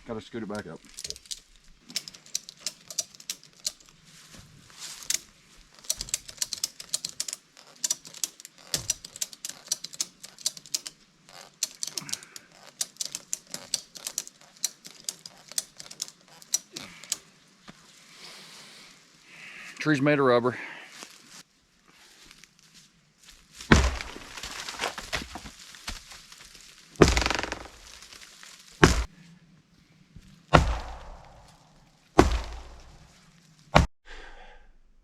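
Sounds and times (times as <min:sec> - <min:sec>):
ratchet strap clicking: 0:00.9 - 0:04.0, 0:04.9 - 0:17.2, 0:27.0 - 0:28.0.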